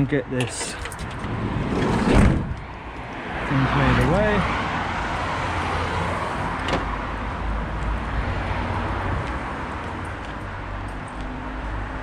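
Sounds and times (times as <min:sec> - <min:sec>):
low vehicle rumble: 0:00.4 - 0:10.0.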